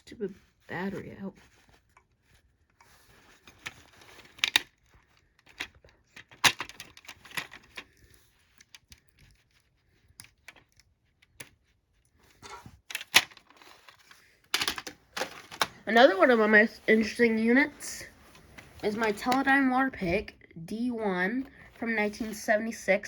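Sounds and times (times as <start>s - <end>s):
plastic clicks scrapes and rustling: 1.5s - 17.2s.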